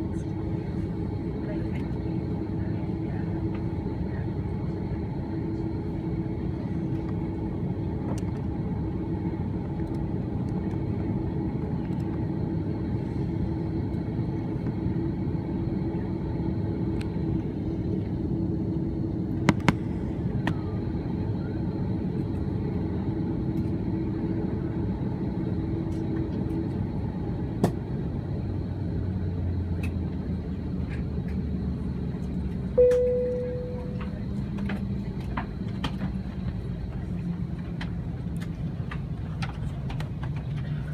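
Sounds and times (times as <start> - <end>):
aircraft cabin rumble: 0.0 - 40.9
steady hum: 32.8 - 34.6.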